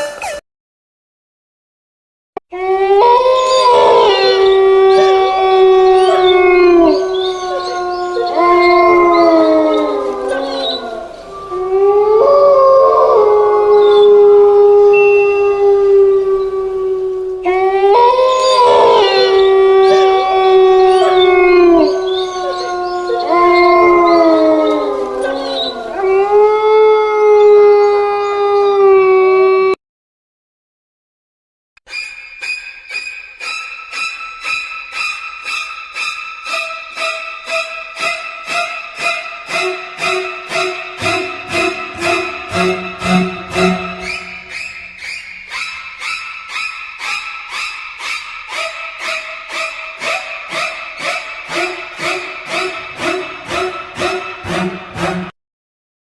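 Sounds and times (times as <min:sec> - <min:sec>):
ringtone of sliding howls: 0:33.4 - 0:45.0, 0:48.6 - 0:55.3
ringtone wailing notes: 0:36.5 - 0:44.8.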